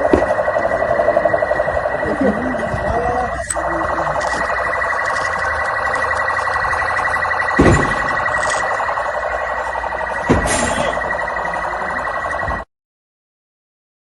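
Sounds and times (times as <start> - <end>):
police siren warbling: 0.0 - 12.7
low thump: 7.5 - 8.2, 10.2 - 10.9.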